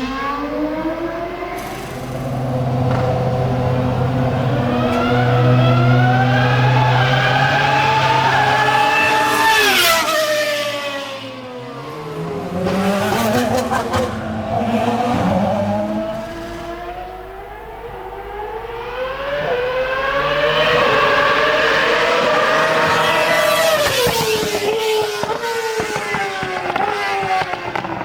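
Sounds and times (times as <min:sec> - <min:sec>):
racing car engine revving: 0:00.0 - 0:28.0.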